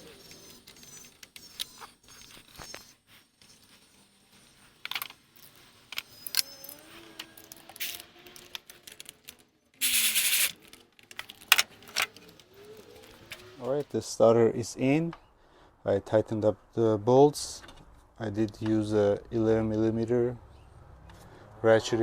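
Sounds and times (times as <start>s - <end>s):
ratcheting wrench clicking: 9.8s - 12.2s.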